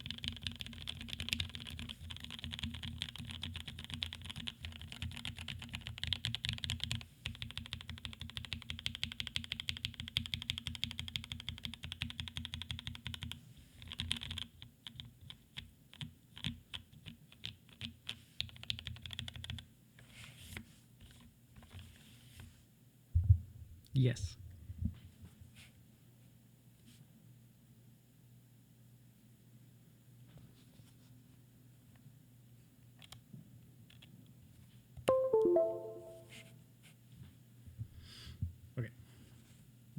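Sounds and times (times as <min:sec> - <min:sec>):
mechanical keyboard typing: 0:00.0 - 0:19.6.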